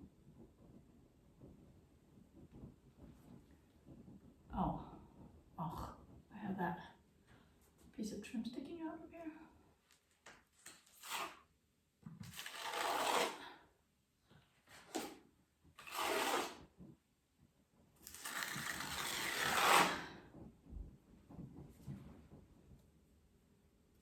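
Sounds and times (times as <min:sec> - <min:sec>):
putty knife scraping a wall: 0:10.6 - 0:11.5, 0:12.2 - 0:13.6, 0:14.7 - 0:16.8, 0:18.0 - 0:20.3.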